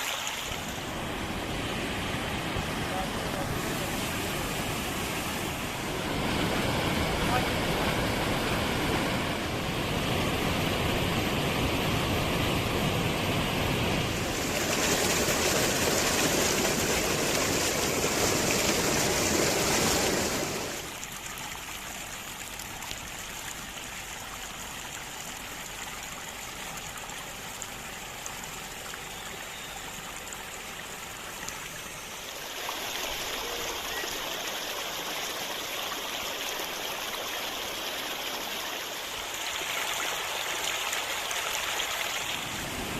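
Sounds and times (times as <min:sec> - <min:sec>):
stream water rushing: 0:00.0 - 0:42.9.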